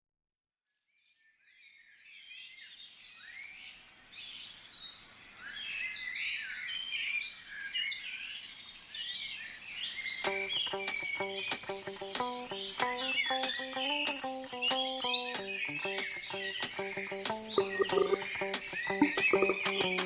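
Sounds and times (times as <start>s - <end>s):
songbirds singing: 1.2s - 20.0s
plucked guitar notes: 10.3s - 20.0s.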